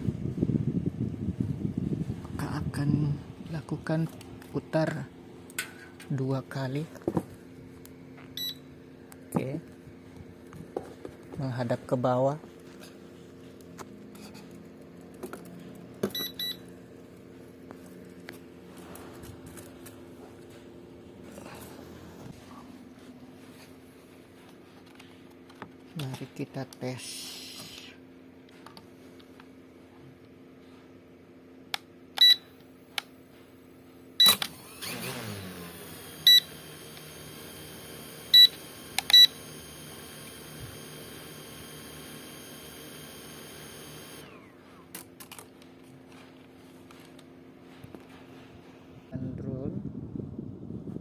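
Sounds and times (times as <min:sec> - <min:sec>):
short electronic beeps: 0:08.4 - 0:08.7
drone motors whining: 0:34.3 - 0:44.9.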